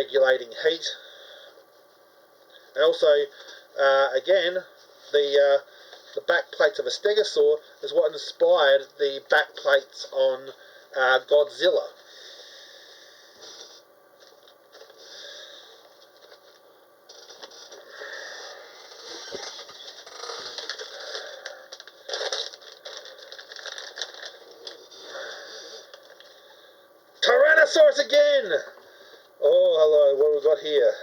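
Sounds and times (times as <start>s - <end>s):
packaging rustling and tearing: 18.5s - 26.2s.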